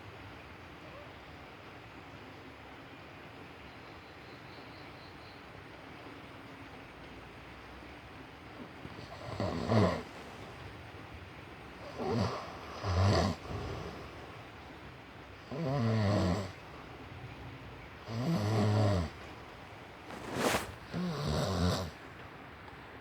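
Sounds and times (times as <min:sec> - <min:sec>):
person snoring: 0:09.0 - 0:10.2, 0:11.8 - 0:14.1, 0:15.5 - 0:16.6, 0:18.1 - 0:19.3, 0:20.1 - 0:22.0.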